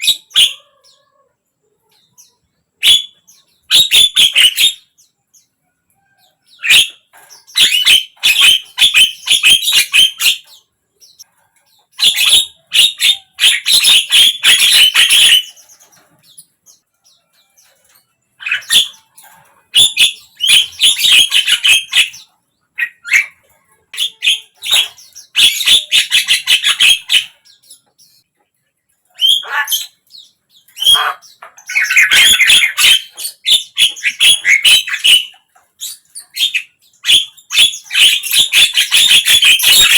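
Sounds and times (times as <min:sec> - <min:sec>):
bird harsh chattering: 0:06.5 - 0:16.8, 0:18.4 - 0:28.2, 0:29.1 - 0:39.9.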